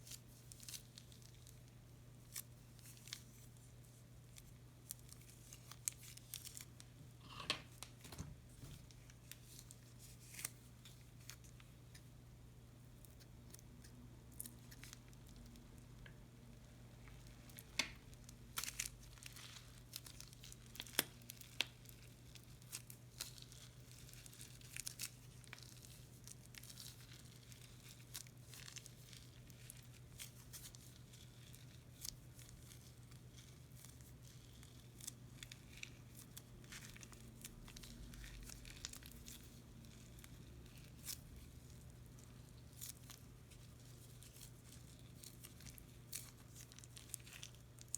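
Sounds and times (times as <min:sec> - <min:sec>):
crunchy slime crackling: 0:00.0 - 0:12.1, 0:13.0 - 0:47.9.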